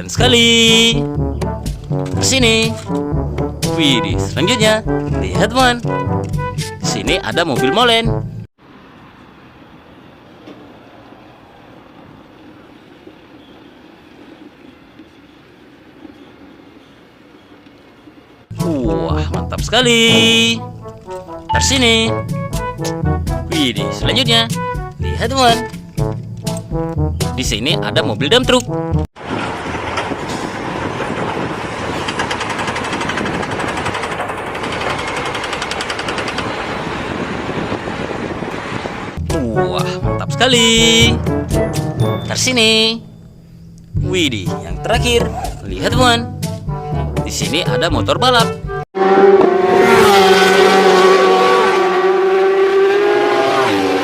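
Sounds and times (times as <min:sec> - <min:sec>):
dump truck rattling: 0:29.2 - 0:39.3
vehicle engine rumble: 0:29.2 - 0:39.6, 0:40.7 - 0:47.2
fast even clatter: 0:29.3 - 0:37.0.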